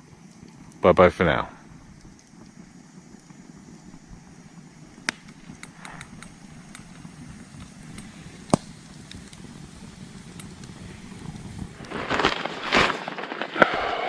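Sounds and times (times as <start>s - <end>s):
campfire crackling: 0.0s - 14.0s
sharp fire pops: 0.0s - 14.0s.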